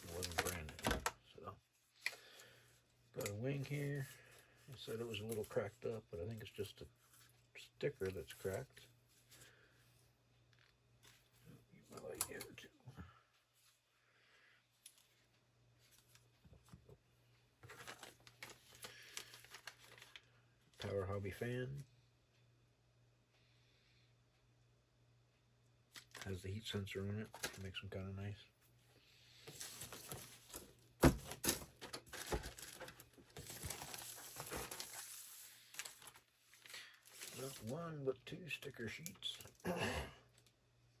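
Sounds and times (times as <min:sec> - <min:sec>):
plastic packaging crinkling: 0:00.0 - 0:01.2, 0:17.6 - 0:20.3, 0:26.0 - 0:26.3, 0:27.2 - 0:27.6, 0:31.3 - 0:37.7.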